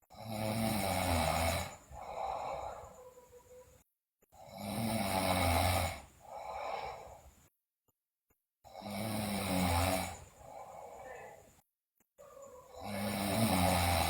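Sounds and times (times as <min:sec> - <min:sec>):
girl snoring loudly: 0:00.1 - 0:03.2, 0:04.4 - 0:07.2, 0:08.7 - 0:11.4, 0:12.3 - 0:14.0.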